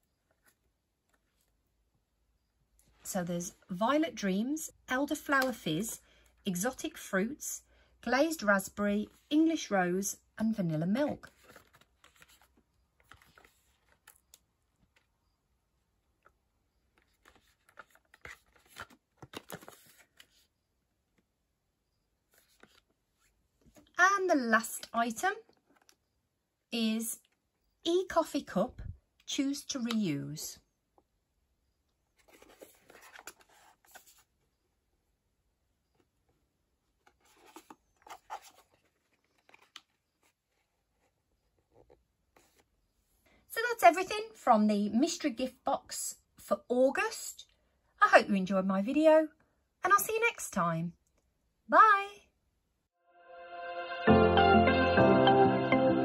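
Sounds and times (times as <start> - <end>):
packaging clicks and rustles: 16.2 - 20.5, 32.2 - 34.3, 37.0 - 40.4.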